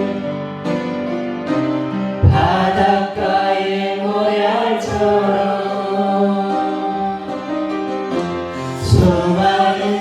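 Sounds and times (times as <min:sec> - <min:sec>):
low beats: 0:02.2 - 0:03.4
voices singing: 0:02.2 - 0:07.6, 0:08.6 - 0:10.0.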